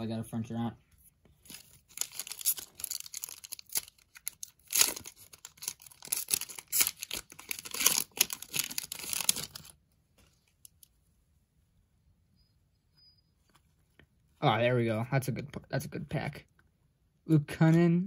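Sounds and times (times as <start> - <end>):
wrapper tearing and crinkling: 1.4 - 9.8.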